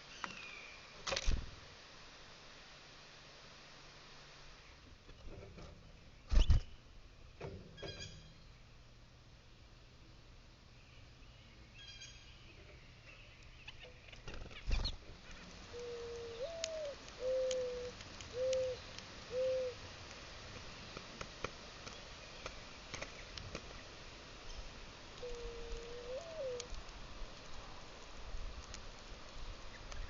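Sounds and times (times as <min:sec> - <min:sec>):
faint ticks: 0:15.2 - 0:23.8, 0:24.5 - 0:30.0
mourning dove cooing: 0:15.6 - 0:19.9, 0:25.2 - 0:26.8.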